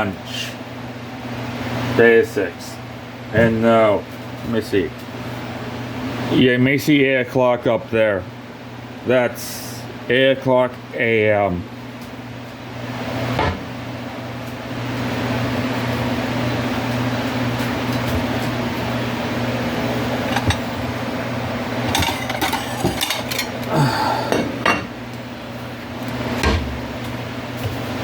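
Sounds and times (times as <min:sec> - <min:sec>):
steady low hum: 0:18.4 - 0:28.0
utensil scraping pan: 0:21.8 - 0:23.6.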